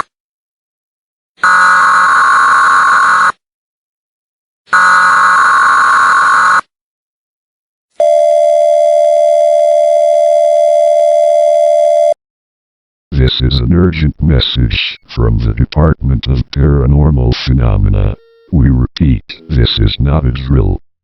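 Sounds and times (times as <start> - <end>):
long steady alert tone: 13.2 - 20.6.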